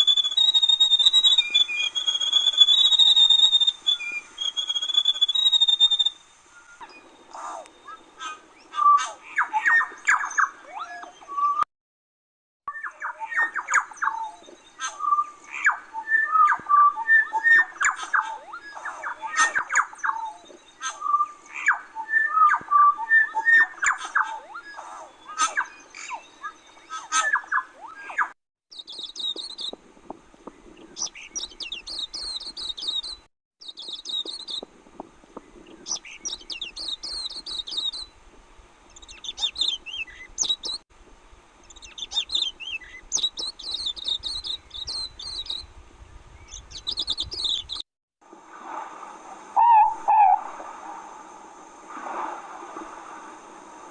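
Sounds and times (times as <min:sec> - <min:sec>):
forest birds squawking and chattering: 0:00.0 - 0:11.6, 0:12.8 - 0:29.8, 0:35.4 - 0:38.1, 0:38.9 - 0:40.8, 0:41.6 - 0:45.6, 0:49.6 - 0:50.7
birds chirping quickly: 0:49.6 - 0:50.6.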